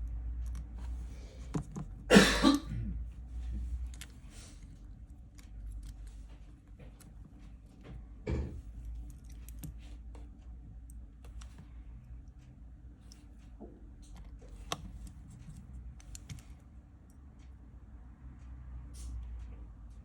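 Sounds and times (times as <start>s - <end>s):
small tools clicking and tapping: 0.0s - 2.0s, 3.5s - 11.6s
low steady hum: 0.0s - 20.0s.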